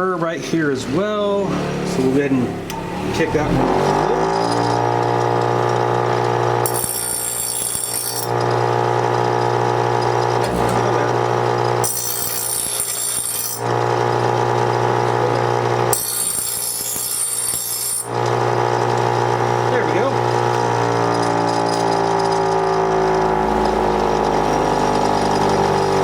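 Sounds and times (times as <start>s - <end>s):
bench grinder motor hum: 2.6s - 26.0s
metal blade grinding on wheel: 4.0s - 8.7s, 9.3s - 25.3s.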